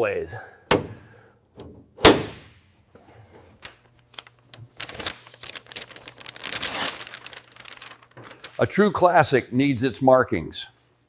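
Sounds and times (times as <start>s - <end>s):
crinkling rustling handling noise: 3.4s - 9.2s.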